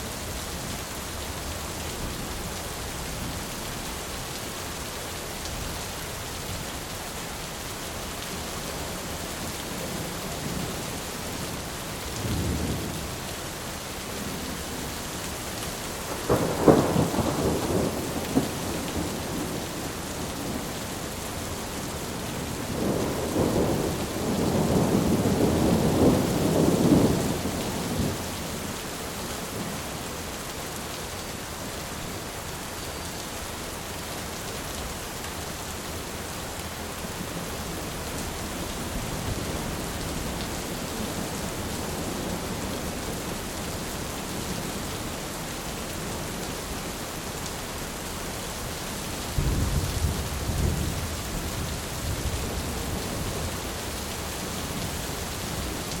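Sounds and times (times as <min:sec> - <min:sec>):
steady rain: 0:00.0 - 0:56.0
thunder rumbling and crackling: 0:16.1 - 0:20.8, 0:22.0 - 0:28.3, 0:49.3 - 0:53.6.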